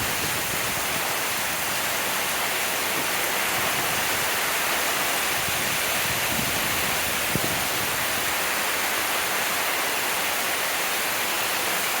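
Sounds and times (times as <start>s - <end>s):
steady rain falling: 0.0s - 12.0s.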